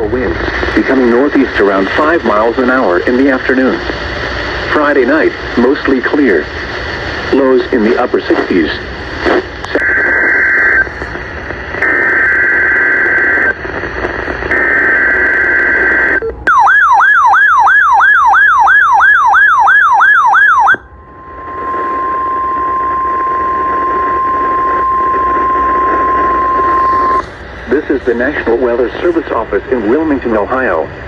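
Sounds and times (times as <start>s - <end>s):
steady warning alarm tone: 14.5s - 28.7s
warbling siren-like alert tone: 16.5s - 27.2s.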